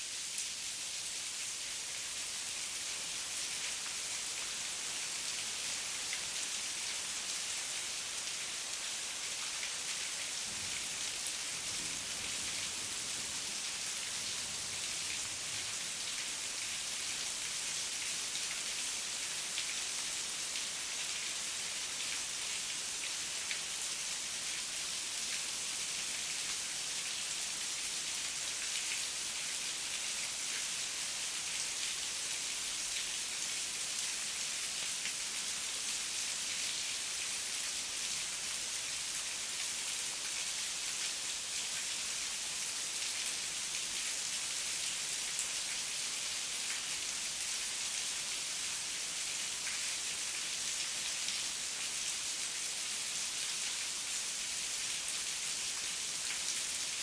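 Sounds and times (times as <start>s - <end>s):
heavy rain falling: 10.4s - 15.8s.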